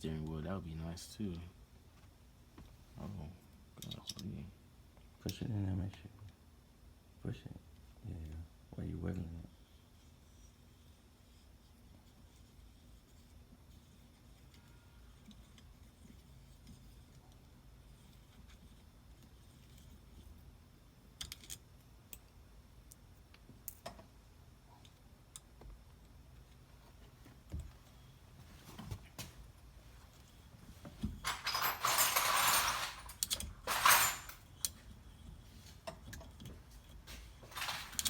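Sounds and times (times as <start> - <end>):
metallic jangling rattle: 31.2 - 34.7, 37.1 - 38.0.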